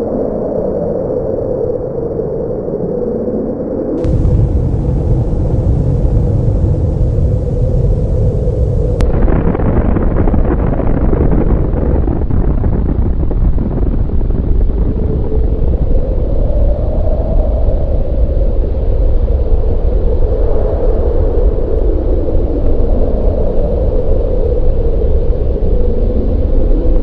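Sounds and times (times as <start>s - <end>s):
loud continuous rumble: 4.0s - 19.7s.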